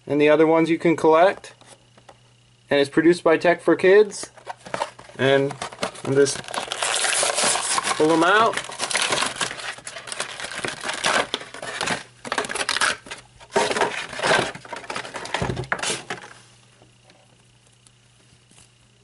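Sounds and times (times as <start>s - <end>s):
plastic packaging crinkling: 4.4s - 16.3s.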